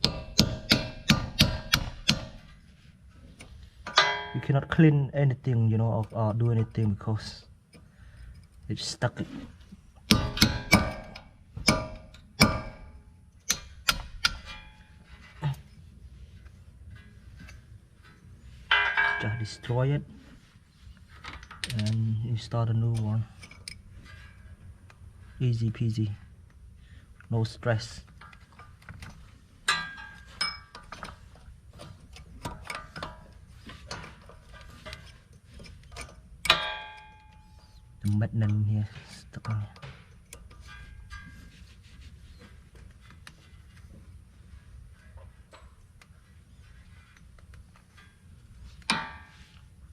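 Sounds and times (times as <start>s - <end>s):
hammer striking metal: 0.0s - 2.5s, 3.9s - 4.8s, 10.1s - 15.0s, 18.7s - 19.7s, 36.4s - 37.8s, 48.9s - 49.5s
hand tools tapping and scraping steel: 0.0s - 4.9s, 5.5s - 49.9s
ringing metal clinks: 3.9s - 4.8s, 14.4s - 15.1s, 18.7s - 19.7s, 29.7s - 30.9s, 36.5s - 38.0s.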